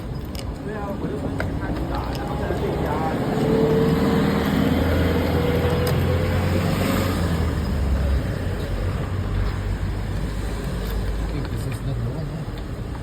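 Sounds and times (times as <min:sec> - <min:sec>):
city street traffic: 0:00.0 - 0:13.0
large vehicle engine hum: 0:00.0 - 0:13.0.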